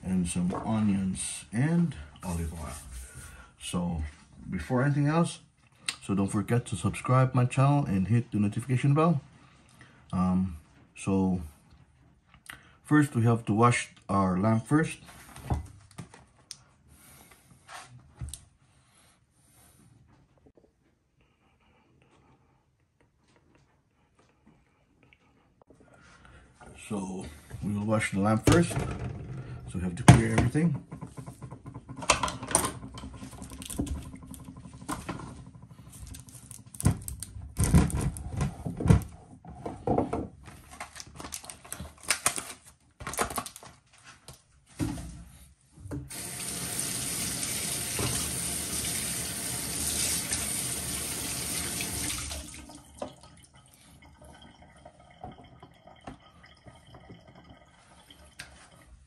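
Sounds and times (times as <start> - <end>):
kitchen tap running into sink: 28.1 - 36.8, 46.0 - 58.8
clatter of things at sink: 28.4 - 42.4.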